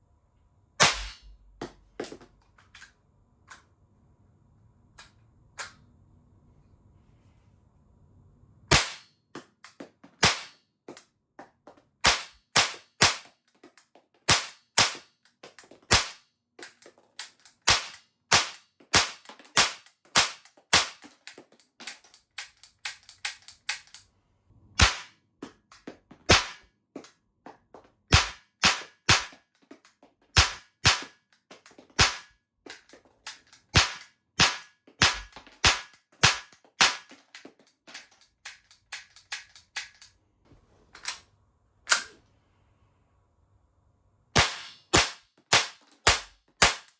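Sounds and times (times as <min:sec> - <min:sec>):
sharp cap gun shots: 0:00.8 - 0:01.3, 0:08.7 - 0:09.1, 0:10.2 - 0:10.6, 0:12.0 - 0:13.3, 0:14.3 - 0:15.1, 0:15.9 - 0:16.2, 0:17.6 - 0:21.1, 0:24.8 - 0:25.1, 0:26.3 - 0:26.6, 0:28.1 - 0:29.4, 0:30.4 - 0:31.2, 0:32.0 - 0:32.3, 0:33.3 - 0:37.1, 0:44.4 - 0:46.9
small clicks: 0:37.1 - 0:40.2.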